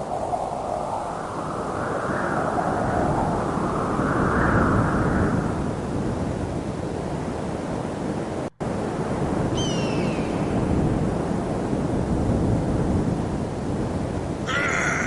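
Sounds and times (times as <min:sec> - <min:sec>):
low outdoor rushing noise: 0:10.3 - 0:15.0.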